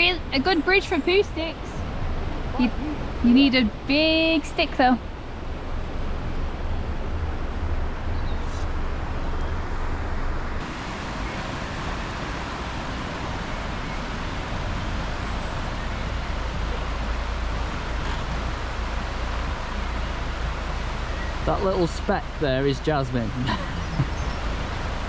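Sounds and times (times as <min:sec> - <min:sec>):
wind buffeting microphone: 0:00.0 - 0:22.2
outdoor rushing noise: 0:05.0 - 0:25.0.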